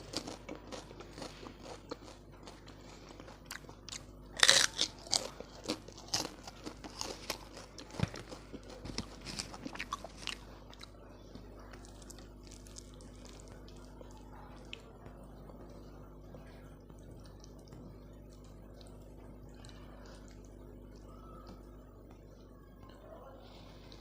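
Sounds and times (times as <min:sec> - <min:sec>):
crunchy bites: 0:00.0 - 0:10.9
wet chewing: 0:00.0 - 0:22.2.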